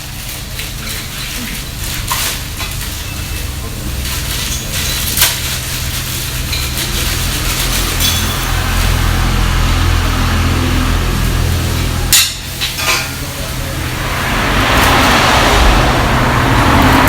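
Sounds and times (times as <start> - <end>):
metal utensil clanking on pan: 6.4 - 9.0, 12.1 - 13.3.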